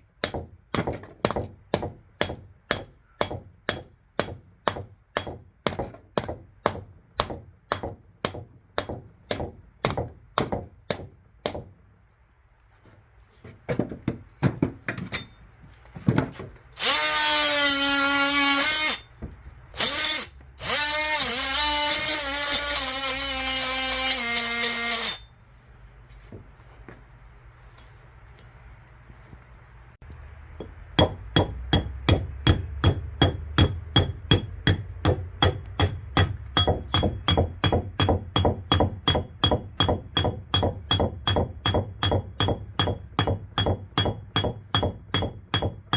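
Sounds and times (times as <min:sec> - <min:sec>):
hammer strikes: 0:00.2 - 0:11.7, 0:30.6 - 0:45.9
power drill running: 0:19.8 - 0:25.1.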